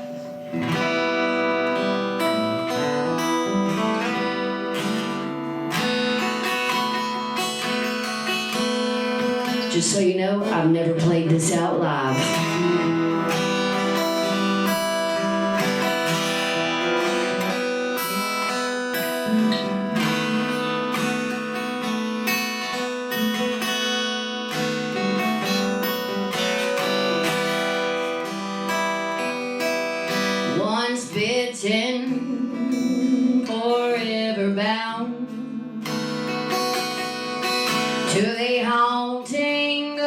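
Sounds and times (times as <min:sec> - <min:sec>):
person singing: 0:00.0 - 0:07.6, 0:09.4 - 0:22.0, 0:30.2 - 0:40.0
acoustic guitar strumming chords: 0:00.0 - 0:40.0.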